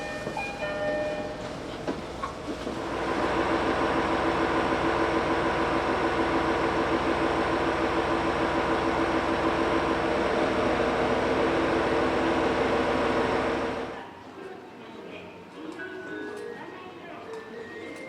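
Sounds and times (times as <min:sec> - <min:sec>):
diesel railcar droning: 0:00.0 - 0:14.0.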